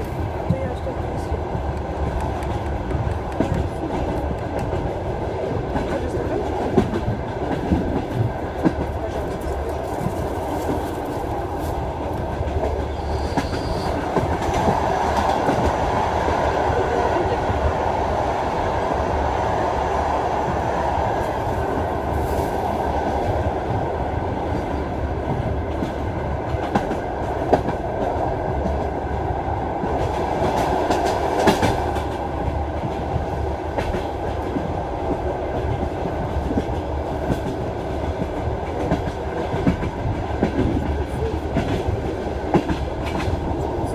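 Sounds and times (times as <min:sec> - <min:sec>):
train rumble: 0:00.0 - 0:43.9
train wheels clattering: 0:05.6 - 0:15.9, 0:29.8 - 0:43.6.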